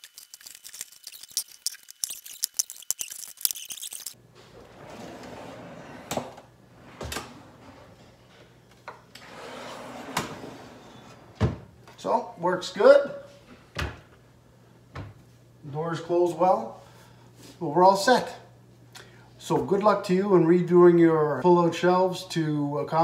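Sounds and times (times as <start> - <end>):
items clinking and rattling: 0.0 - 4.2
shelf rolling on slides: 4.3 - 8.4, 9.1 - 11.7.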